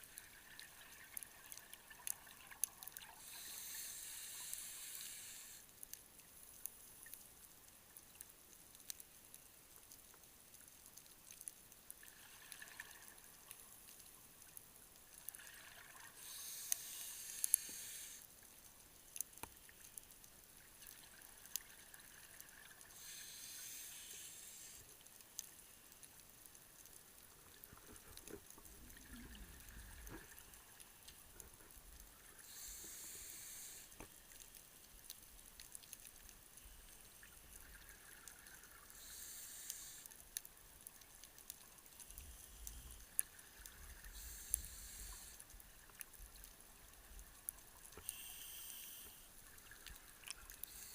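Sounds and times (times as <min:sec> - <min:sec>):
faint clicks: 0:00.0 - 0:50.9
regulator inhalation hiss: 0:03.2 - 0:05.7, 0:16.2 - 0:18.3, 0:23.0 - 0:24.9, 0:32.4 - 0:34.1, 0:38.9 - 0:40.2, 0:44.1 - 0:45.5, 0:48.0 - 0:49.3, 0:50.6 - 0:50.9.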